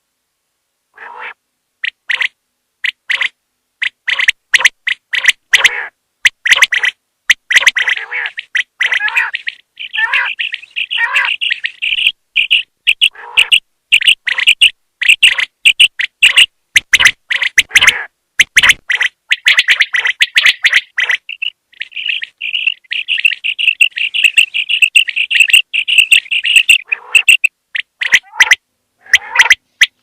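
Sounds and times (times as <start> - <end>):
quail chirping calls: 1.0 - 30.0.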